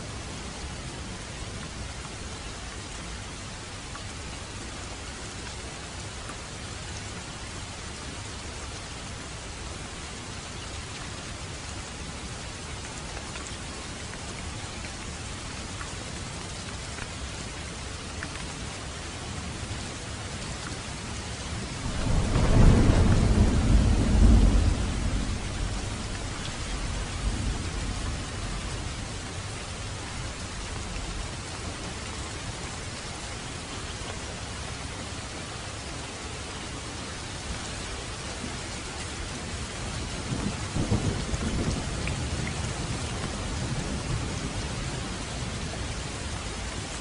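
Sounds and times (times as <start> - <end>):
steady rain falling: 0.0 - 47.0
thunder rumbling: 21.8 - 31.0, 40.1 - 45.3.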